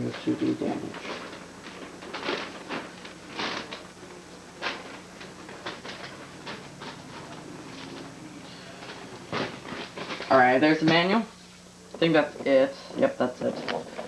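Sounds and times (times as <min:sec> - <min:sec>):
faint steady hum: 0:00.0 - 0:14.0
paper manual rustling: 0:00.4 - 0:10.4.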